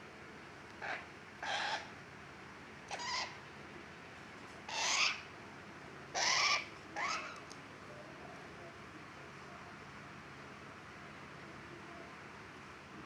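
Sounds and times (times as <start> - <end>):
starling harsh calls: 0.8 - 1.9, 2.9 - 3.4, 4.7 - 5.3, 6.1 - 7.4.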